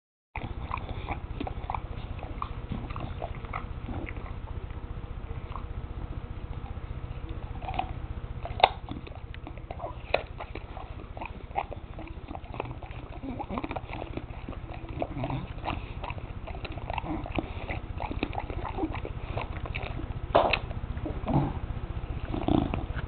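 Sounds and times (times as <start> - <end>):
dog crunching a carrot: 0.4 - 4.8, 6.5 - 21.5, 22.1 - 23.0.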